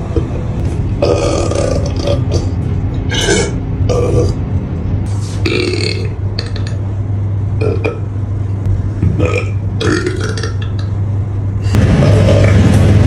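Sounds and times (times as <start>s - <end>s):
steady low hum: 0.0s - 13.0s
person burping: 1.0s - 4.4s, 5.4s - 6.8s, 7.6s - 8.0s, 9.0s - 10.9s.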